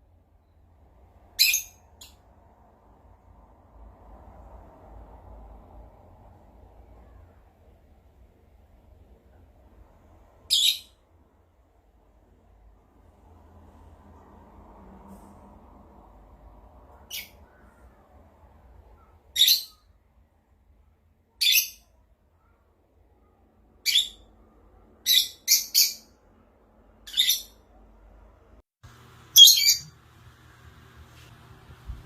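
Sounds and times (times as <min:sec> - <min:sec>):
parrot squawking: 0:01.4 - 0:02.1, 0:10.5 - 0:11.0, 0:19.4 - 0:19.8, 0:23.8 - 0:24.3, 0:25.0 - 0:26.1, 0:27.1 - 0:27.6, 0:29.4 - 0:29.9.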